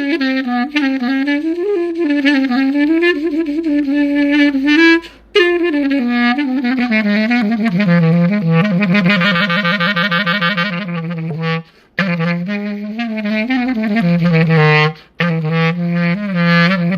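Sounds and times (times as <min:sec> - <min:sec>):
solo clarinet melody: 0:00.0 - 0:16.9
player breathing: 0:11.6 - 0:12.0.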